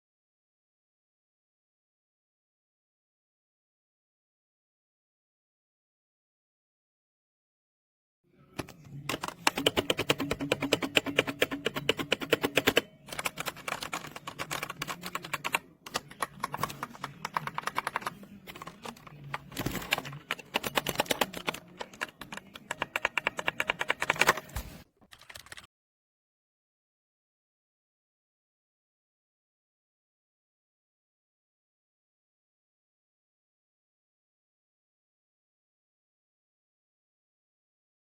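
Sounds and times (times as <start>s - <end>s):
mechanical keyboard typing: 8.6s - 25.7s.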